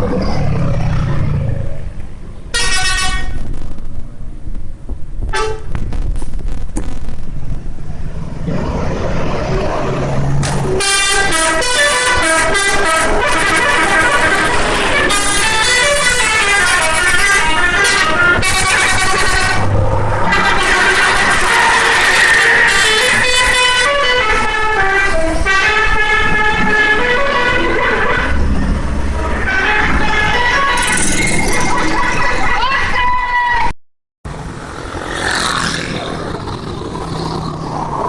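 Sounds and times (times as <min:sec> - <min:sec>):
musical air horn: 0:02.5 - 0:03.4, 0:05.3 - 0:05.7, 0:10.8 - 0:28.5, 0:29.2 - 0:31.2.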